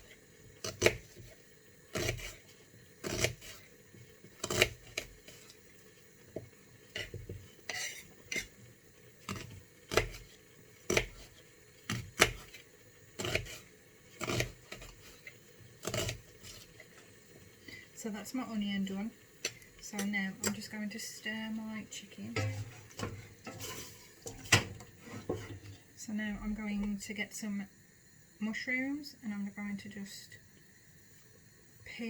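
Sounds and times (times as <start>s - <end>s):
knife chopping on board: 0.6s - 2.4s, 3.0s - 3.6s, 4.4s - 5.1s, 9.3s - 10.2s, 10.9s - 11.3s, 11.9s - 12.6s, 13.2s - 13.6s, 14.2s - 15.0s, 15.8s - 16.2s.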